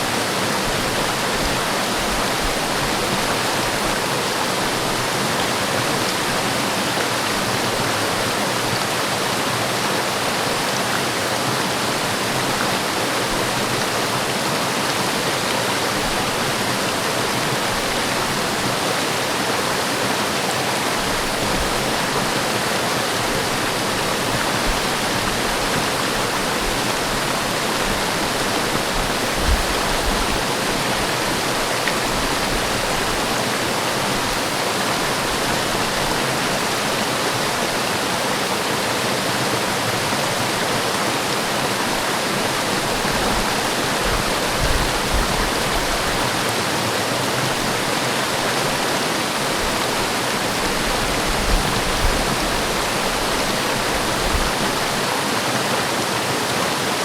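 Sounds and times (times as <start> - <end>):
waterfall splashing: 0.0 - 57.0
wind buffeting microphone: 23.2 - 33.4, 41.8 - 46.6, 47.4 - 55.0.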